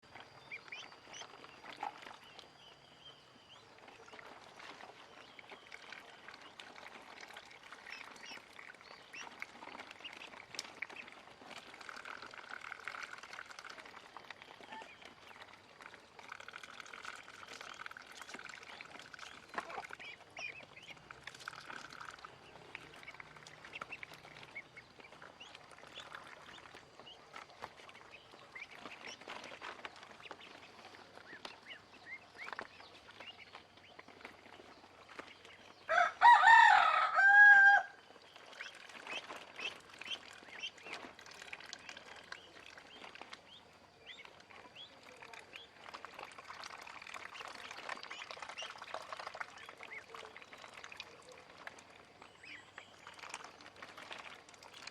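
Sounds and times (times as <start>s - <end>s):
ducklings peeping: 0.0s - 54.9s.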